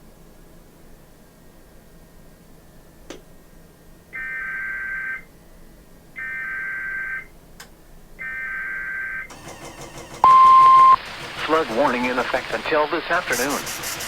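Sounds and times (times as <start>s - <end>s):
shrill digital data tones: 10.2s - 11.0s
faint radio hiss: 11.4s - 13.8s.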